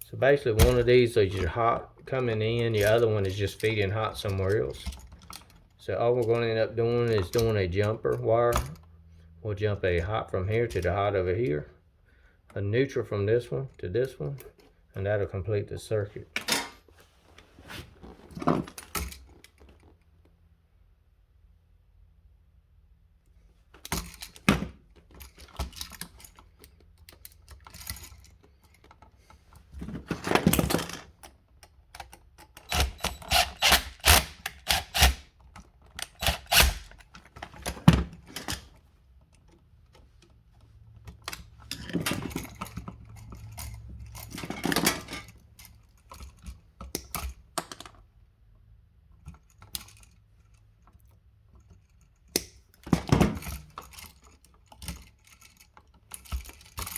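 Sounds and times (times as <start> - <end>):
hand tools clicking and rattling: 23.9 - 39.4, 41.1 - 48.0, 51.6 - 56.9.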